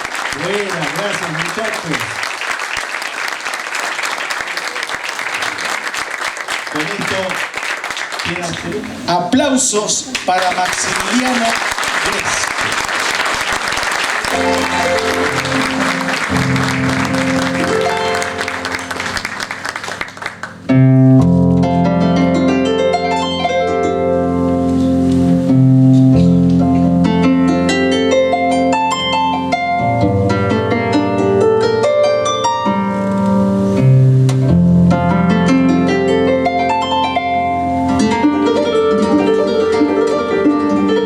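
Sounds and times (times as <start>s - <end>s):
audience applause: 0.0s - 9.1s, 9.9s - 20.7s
harp plucked melody: 14.3s - 41.0s.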